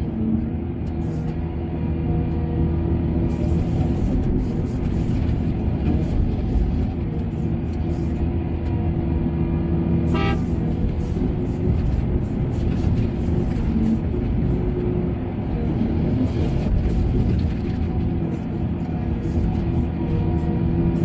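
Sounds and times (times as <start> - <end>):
heavy diesel engine running: 0.0 - 21.0
short horn toot: 10.1 - 10.6.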